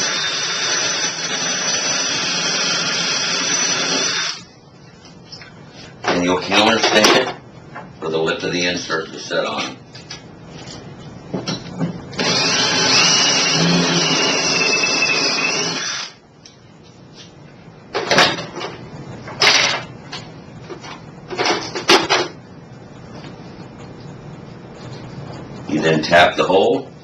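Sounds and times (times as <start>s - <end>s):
power drill spinning: 0.0s - 4.5s, 12.2s - 16.2s.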